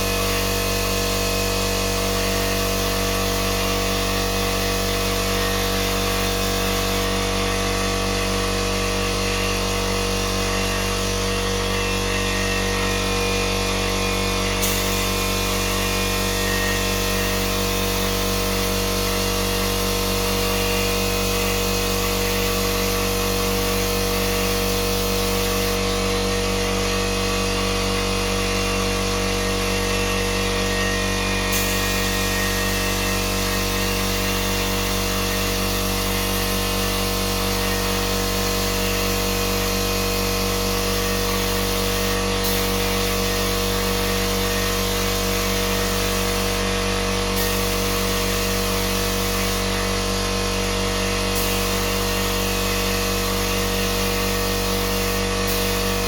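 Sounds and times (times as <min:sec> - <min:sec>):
power tool motor whirring: 0:02.1 - 0:25.9, 0:28.6 - 0:56.0.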